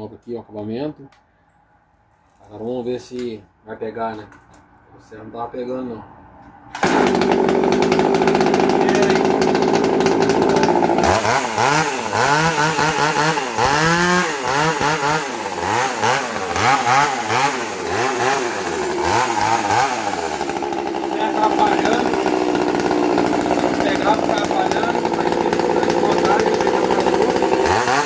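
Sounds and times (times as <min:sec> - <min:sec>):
chainsaw engine revving: 0:06.7 - 0:28.0.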